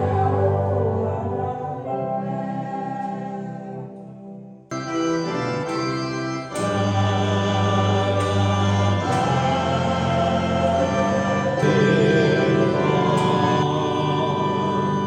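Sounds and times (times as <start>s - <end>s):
choir singing: 0.0s - 15.0s
organ sustained chords: 0.0s - 15.0s.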